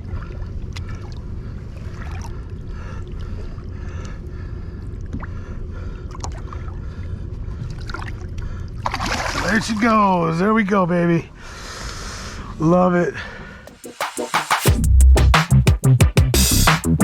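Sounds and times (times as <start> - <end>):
water gurgling along hull: 0.0 - 10.5
boat engine humming: 0.0 - 12.7.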